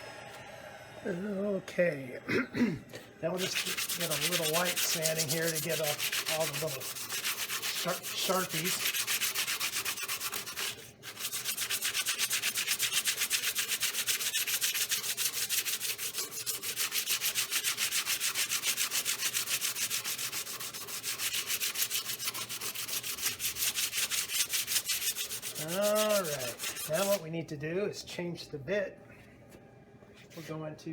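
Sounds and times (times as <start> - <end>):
sandpaper rasping on wood: 3.3 - 27.2.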